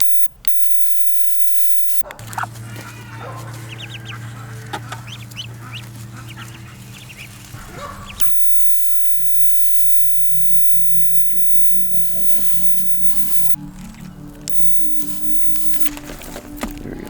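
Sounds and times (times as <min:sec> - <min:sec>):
steady low hum: 0:00.0 - 0:02.0, 0:07.4 - 0:16.6
chickens clucking: 0:02.0 - 0:14.4.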